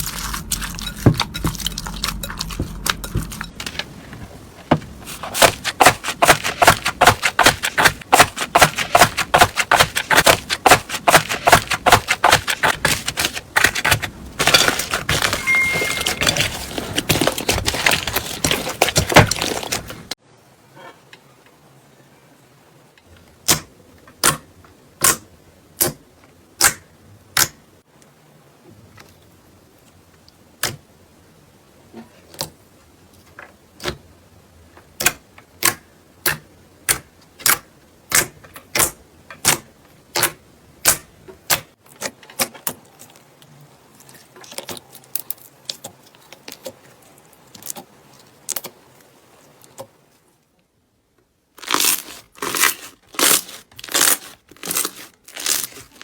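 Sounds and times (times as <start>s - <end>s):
slime crackling: 0.0s - 3.7s, 4.9s - 20.1s, 51.6s - 56.0s.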